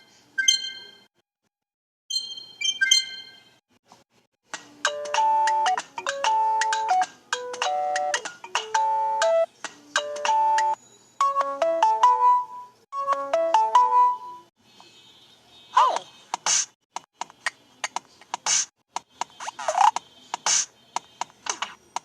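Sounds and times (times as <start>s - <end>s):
electronic ringtone melody: 4.8s - 14.5s.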